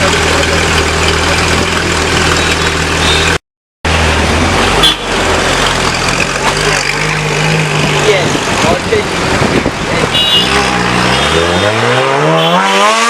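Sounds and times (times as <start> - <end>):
car engine idling: 0.0 - 3.3.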